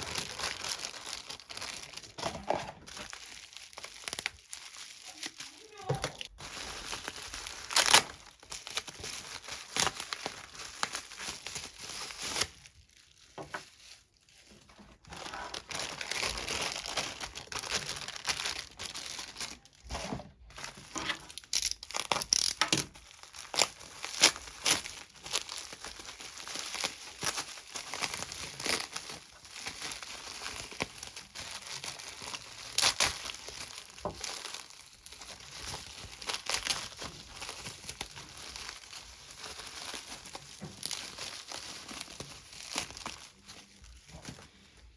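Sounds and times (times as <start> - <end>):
packaging crinkling and tearing: 0.0 - 44.9.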